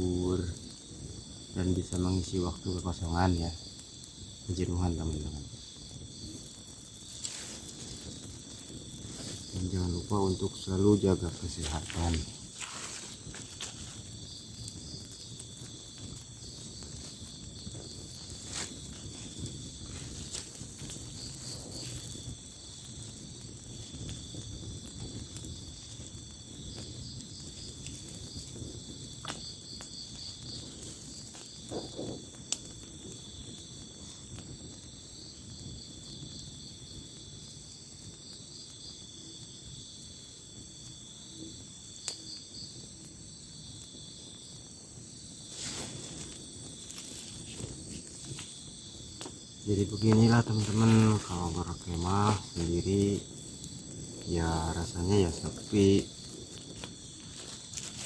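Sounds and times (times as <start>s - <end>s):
crickets chirring: 0.0s - 58.0s.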